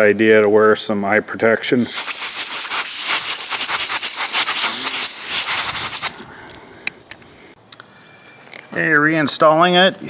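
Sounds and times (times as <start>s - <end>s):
compressed air blasting: 1.8s - 6.2s.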